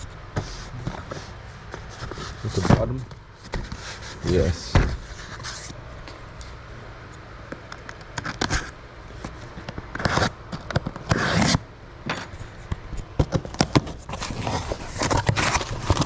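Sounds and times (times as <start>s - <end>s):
razor blade cutting cardboard: 10.0s - 10.4s, 11.0s - 11.6s
cardboard rustling: 13.2s - 16.0s.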